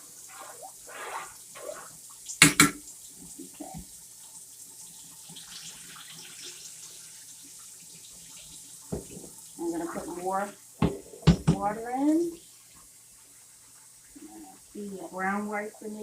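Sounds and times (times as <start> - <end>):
spoon stirring rice in water: 0.2 - 2.8
sharp knocks: 2.4 - 2.8, 10.8 - 11.7.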